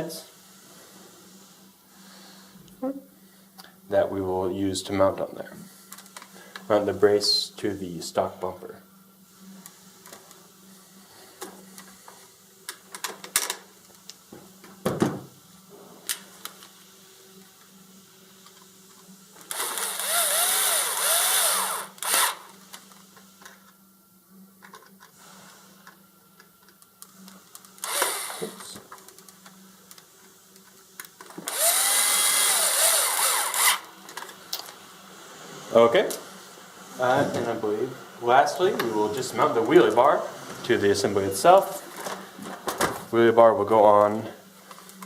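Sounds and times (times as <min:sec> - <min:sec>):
cordless drill whirring: 0:19.4 - 0:22.6, 0:27.8 - 0:28.8, 0:31.4 - 0:33.9.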